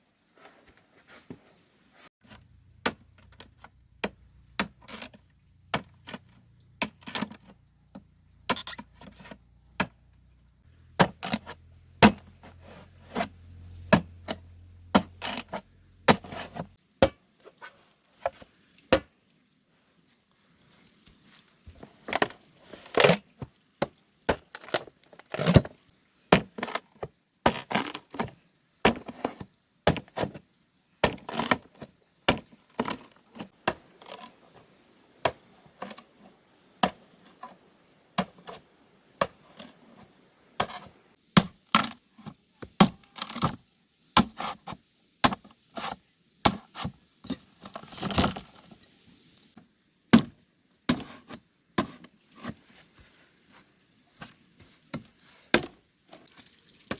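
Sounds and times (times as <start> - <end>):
blade chopping into wood: 2.2 - 7.5, 8.5 - 10.0, 11.0 - 17.2, 31.0 - 31.7, 55.5 - 55.8.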